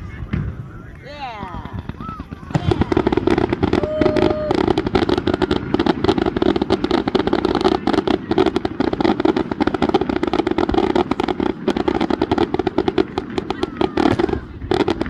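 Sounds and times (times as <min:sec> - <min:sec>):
fireworks crackling: 0:00.0 - 0:15.0.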